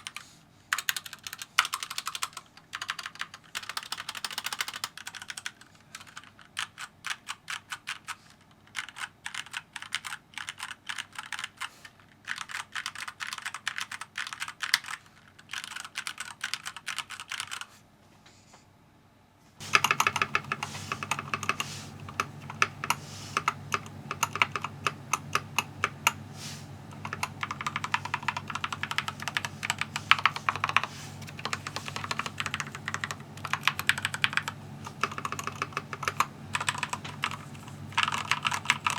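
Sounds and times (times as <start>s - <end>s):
mechanical keyboard typing: 0.0s - 17.7s, 19.6s - 26.2s, 26.8s - 38.9s
steady low hum: 19.6s - 38.9s.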